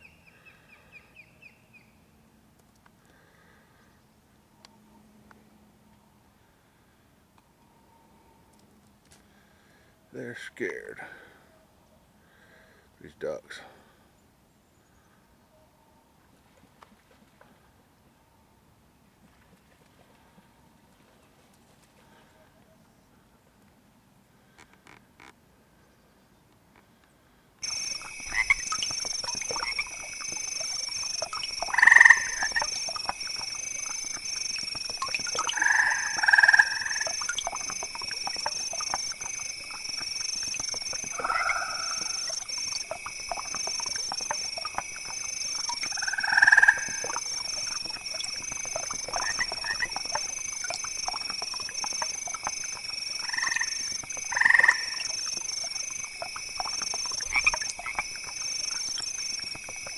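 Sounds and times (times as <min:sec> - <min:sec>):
lower animal calls: 0:27.6 - 0:59.9
pulsing high animal calling: 0:27.6 - 0:59.9.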